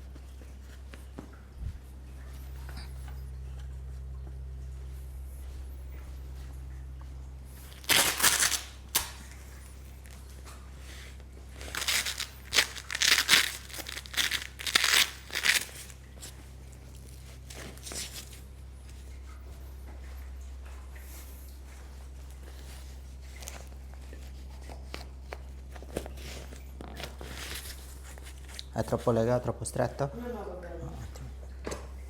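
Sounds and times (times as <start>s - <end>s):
steady low hum: 0.0s - 32.0s
material tearing and crinkling: 7.7s - 9.3s, 11.5s - 16.0s, 24.3s - 28.7s.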